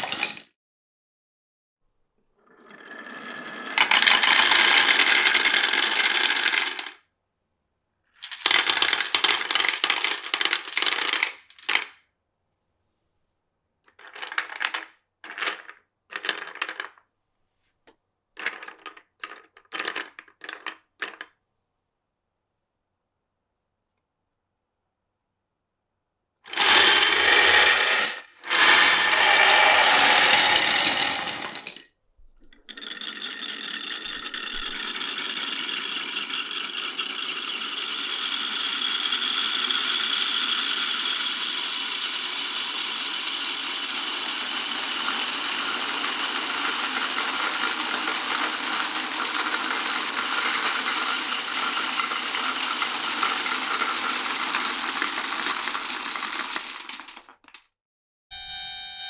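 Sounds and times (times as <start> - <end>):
marbles rattling on wooden run: 0.0 - 0.4, 2.7 - 7.0, 8.2 - 11.9, 13.9 - 17.0, 18.4 - 21.3, 26.5 - 31.8, 32.6 - 57.6.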